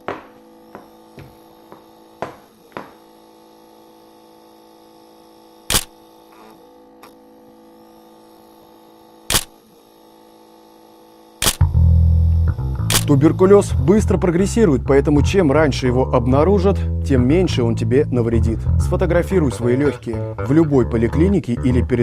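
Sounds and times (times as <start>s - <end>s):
steady hum: 0.0s - 22.0s
sharp clicks: 5.7s - 5.9s, 9.3s - 9.5s, 11.4s - 11.7s, 12.8s - 13.1s.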